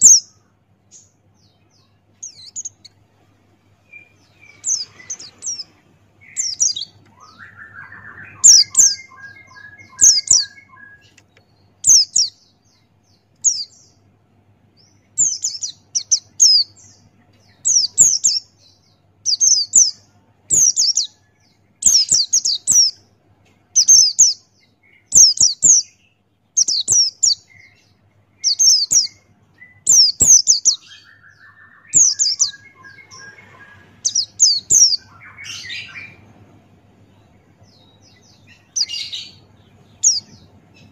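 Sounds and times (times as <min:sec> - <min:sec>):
bird high chirps: 0:00.0 - 0:03.1, 0:03.7 - 0:14.0, 0:14.8 - 0:23.1, 0:23.7 - 0:40.9
lower stuttering bird notes: 0:30.9 - 0:40.9.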